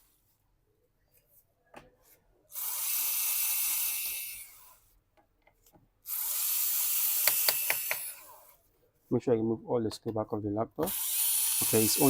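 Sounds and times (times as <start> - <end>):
electric screwdriver running: 6.1 - 8.5, 10.9 - 12.0.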